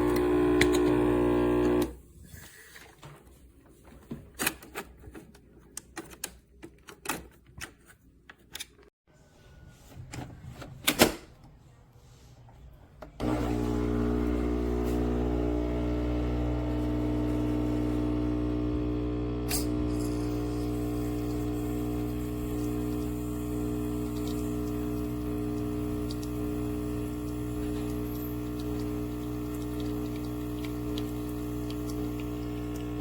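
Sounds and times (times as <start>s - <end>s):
espresso machine pump humming: 0.0s - 2.0s, 13.2s - 33.0s.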